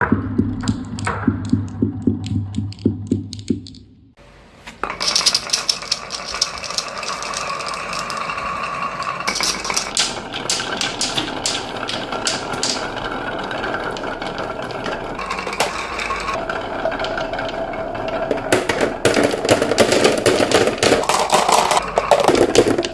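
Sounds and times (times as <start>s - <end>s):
marbles clicking and rolling: 4.8s - 22.9s.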